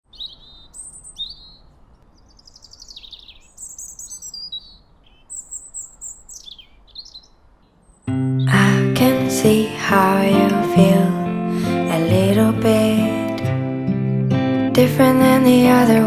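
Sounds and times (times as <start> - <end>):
songbirds singing: 0.0 - 9.2.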